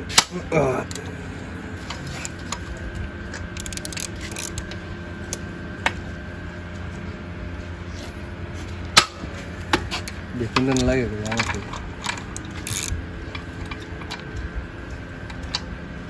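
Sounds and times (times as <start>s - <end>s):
steady background hum: 0.0s - 16.0s
metal clicks: 1.8s - 6.0s.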